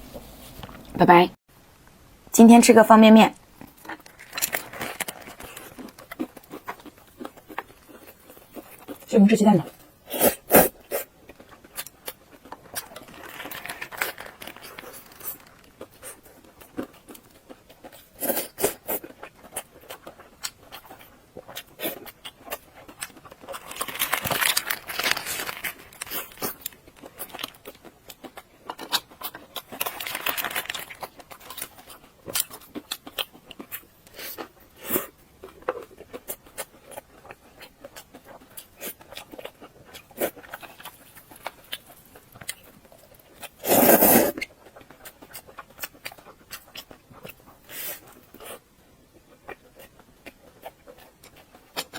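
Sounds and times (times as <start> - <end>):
chewing and mouth clicks: 3.4 - 51.9
noodle slurping: 43.6 - 44.4.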